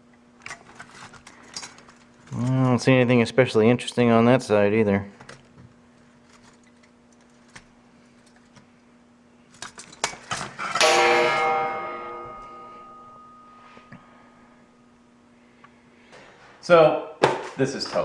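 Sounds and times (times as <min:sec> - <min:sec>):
metal piece knocking and ringing: 0:10.7 - 0:14.0.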